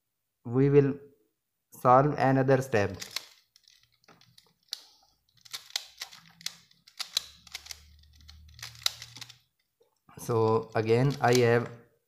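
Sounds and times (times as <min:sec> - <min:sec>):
plastic puzzle layers clicking: 0:02.9 - 0:11.7.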